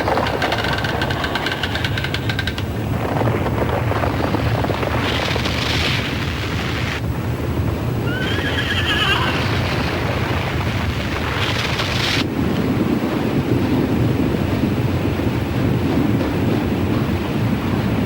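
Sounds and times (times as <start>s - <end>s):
crashing and rattling: 0.0s - 6.6s
deep earthquake rumbling: 0.0s - 17.6s.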